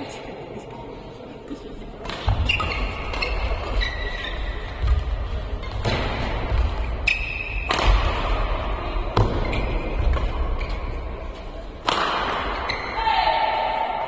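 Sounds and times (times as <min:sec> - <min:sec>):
shoes squeaking on court floor: 0:02.0 - 0:07.9, 0:09.2 - 0:11.7, 0:12.4 - 0:13.0
rackets hitting shuttlecock: 0:02.0 - 0:13.0.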